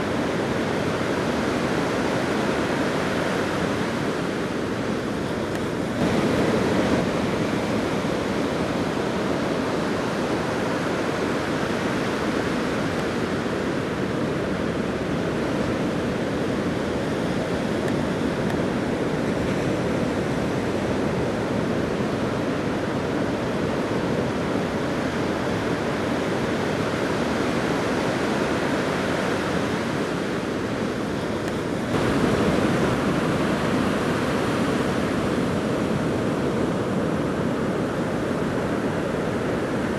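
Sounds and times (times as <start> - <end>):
ocean surf breaking: 0.0 - 39.9.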